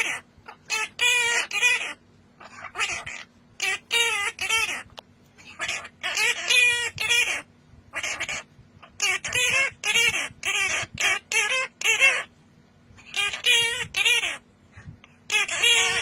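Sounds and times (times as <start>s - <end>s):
bird calling: 15.3s - 16.0s.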